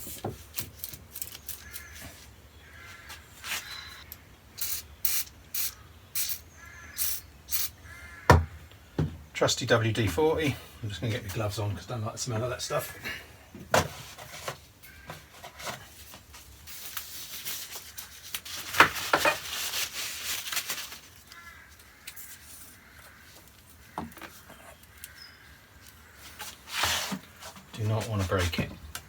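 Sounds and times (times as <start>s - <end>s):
aerosol can spraying: 4.6s - 7.8s.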